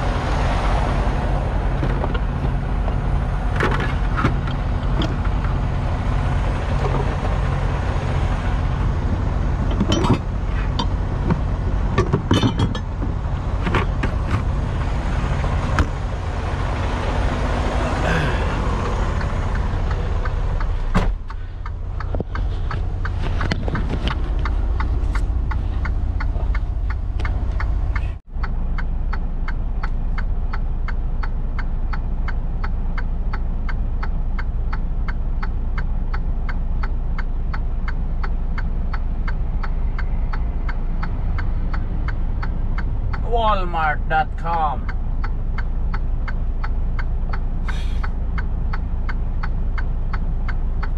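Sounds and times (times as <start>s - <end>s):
truck engine running: 0.0s - 50.9s
turn signal clicking: 18.8s - 43.2s, 44.3s - 50.9s.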